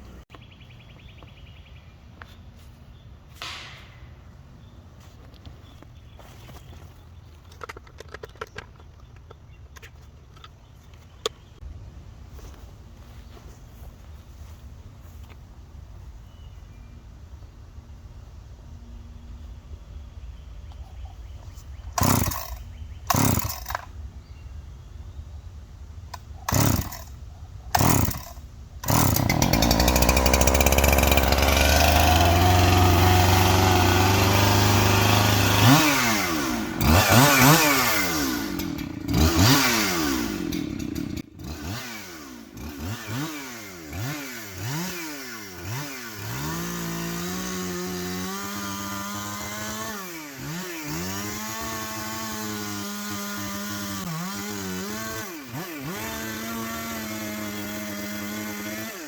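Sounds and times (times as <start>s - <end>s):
chainsaw pull-starting: 22.0s - 23.9s, 26.1s - 27.1s, 27.7s - 59.0s
chainsaw revving and idling: 22.0s - 23.9s, 26.1s - 59.0s.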